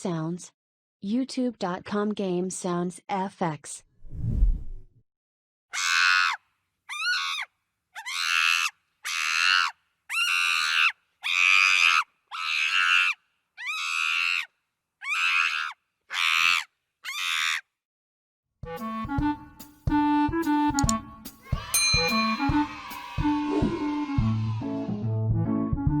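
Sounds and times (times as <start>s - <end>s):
chimpanzee screaming: 5.7s - 17.6s.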